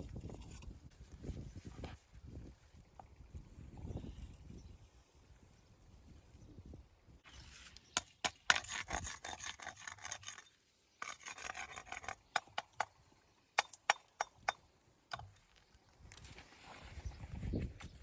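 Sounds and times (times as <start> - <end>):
hand tool scraping stone: 7.5 - 12.9.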